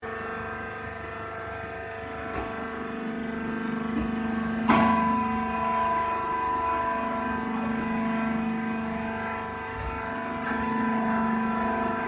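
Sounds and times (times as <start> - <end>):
baler droning hum: 0.0 - 12.0
loud clank: 4.0 - 5.3.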